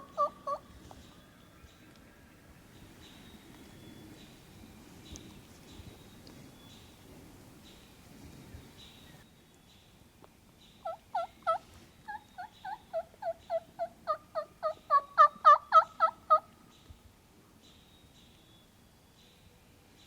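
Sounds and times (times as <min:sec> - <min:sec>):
turkey yelping: 0:00.0 - 0:00.6, 0:10.8 - 0:16.4.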